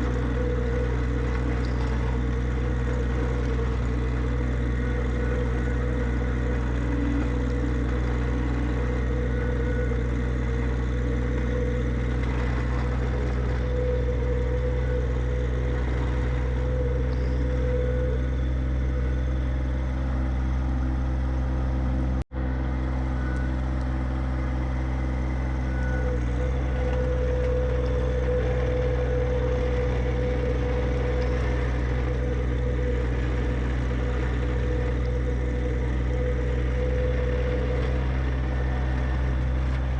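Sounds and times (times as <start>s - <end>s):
tractor diesel engine running: 0.0s - 39.9s.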